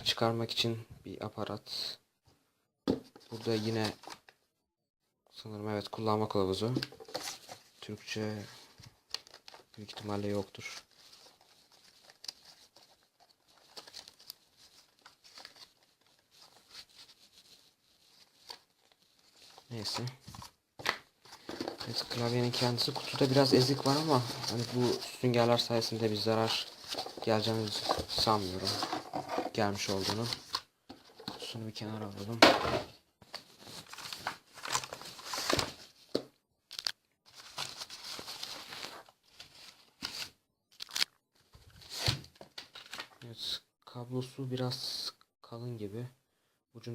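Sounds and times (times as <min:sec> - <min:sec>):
paper and plastic packaging rustling: 0:06.6 - 0:43.3.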